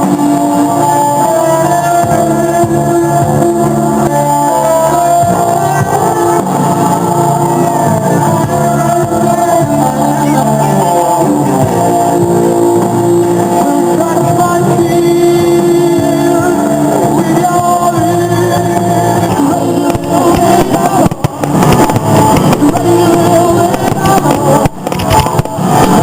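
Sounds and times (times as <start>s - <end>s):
loud rock music with singing: 0.0s - 26.0s
sharp crackles and bangs: 19.2s - 26.0s.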